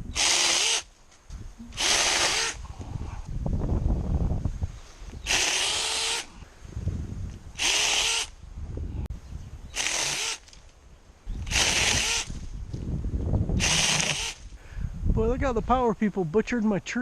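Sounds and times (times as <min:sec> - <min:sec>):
mini chainsaw motor whining: 0:00.1 - 0:00.9, 0:01.8 - 0:02.6, 0:05.2 - 0:06.3, 0:07.6 - 0:08.3, 0:09.8 - 0:10.5, 0:11.4 - 0:12.4, 0:13.6 - 0:14.4.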